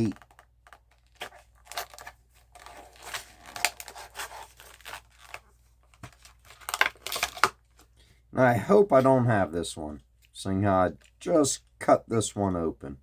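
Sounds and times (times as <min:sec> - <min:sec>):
plastic packaging crinkling: 0:00.0 - 0:07.8.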